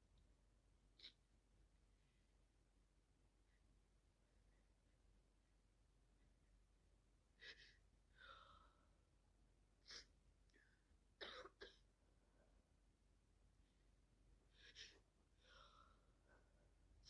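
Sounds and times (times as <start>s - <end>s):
woman coughing and sniffing: 11.2s - 11.9s.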